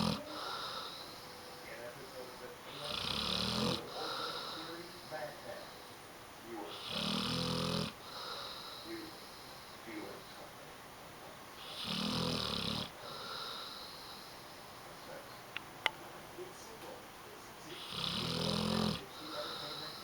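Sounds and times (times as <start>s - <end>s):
dog snoring: 0.0s - 5.9s, 6.6s - 10.3s, 11.6s - 14.5s, 17.7s - 20.0s
dog breathing: 0.0s - 10.6s, 11.6s - 15.2s, 17.6s - 20.0s.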